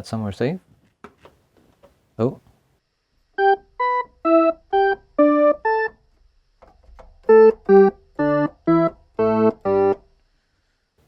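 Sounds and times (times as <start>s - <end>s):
electronic keyboard notes: 3.4s - 6.1s, 6.9s - 10.0s.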